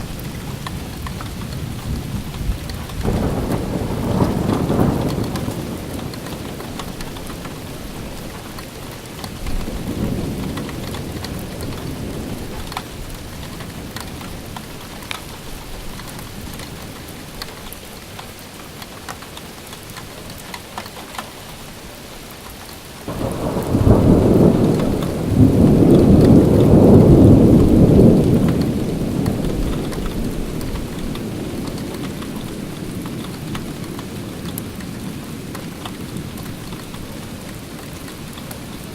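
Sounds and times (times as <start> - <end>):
thunder rumbling: 0.0 - 15.0, 23.1 - 38.9
raindrops ticking: 0.0 - 38.9
steady rain falling: 0.0 - 38.9.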